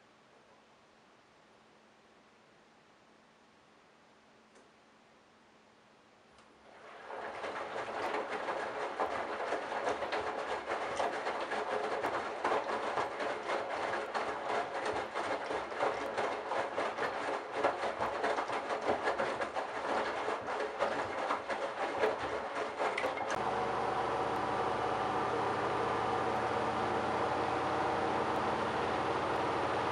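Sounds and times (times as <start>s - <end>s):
washing machine drum turning: 6.9s - 29.9s.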